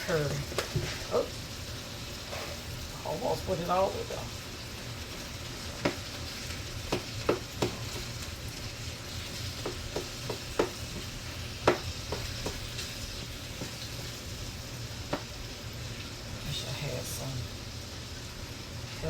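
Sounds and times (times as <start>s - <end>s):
vegetables sizzling in a frying pan: 0.0s - 19.0s
utensil knocking against pan: 6.9s - 8.1s, 9.6s - 12.8s.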